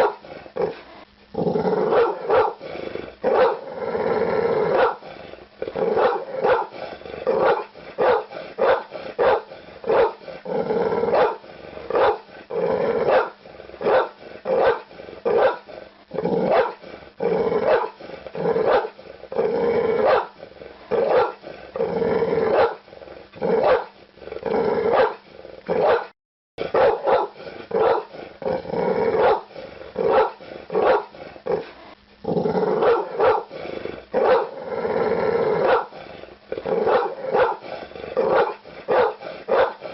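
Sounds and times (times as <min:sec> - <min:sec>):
dog barking: 0:00.0 - 0:00.2, 0:01.9 - 0:02.6, 0:03.3 - 0:03.6, 0:04.7 - 0:05.0, 0:06.0 - 0:06.8, 0:07.4 - 0:10.2, 0:11.1 - 0:12.2, 0:13.1 - 0:15.7, 0:16.5 - 0:16.8, 0:17.6 - 0:18.0, 0:18.6 - 0:19.0, 0:20.0 - 0:20.4, 0:21.0 - 0:21.4, 0:22.5 - 0:22.8, 0:23.6 - 0:23.9, 0:24.9 - 0:25.2, 0:25.8 - 0:28.1, 0:29.2 - 0:31.2, 0:32.8 - 0:33.5, 0:34.2 - 0:34.6, 0:35.6 - 0:35.9, 0:36.8 - 0:39.8.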